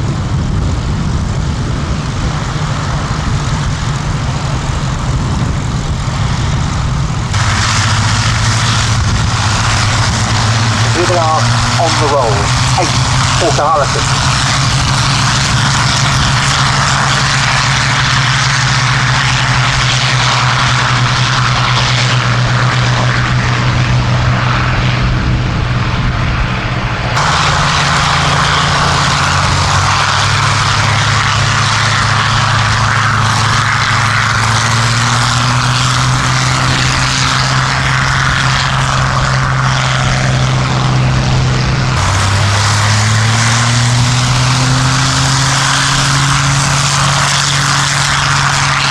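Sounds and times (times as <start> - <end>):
aircraft piston engines droning: 0.0 - 48.9.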